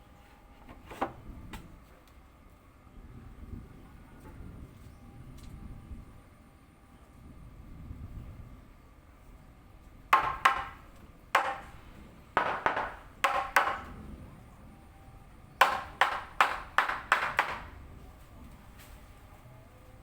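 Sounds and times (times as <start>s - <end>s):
hammer strikes ringing: 10.2s - 14.0s, 15.6s - 17.7s.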